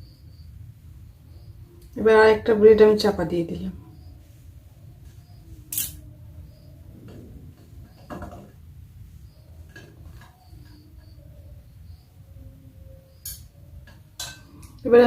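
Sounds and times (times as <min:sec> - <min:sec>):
low steady hum: 0:00.0 - 0:15.0
utensils clinking against dishes: 0:13.2 - 0:14.8.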